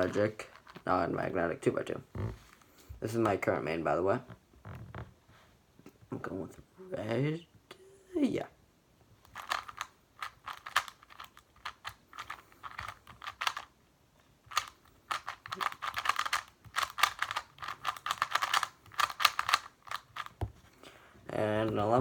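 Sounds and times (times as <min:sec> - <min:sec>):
speed cube clicking: 0:09.2 - 0:13.7, 0:14.5 - 0:20.4.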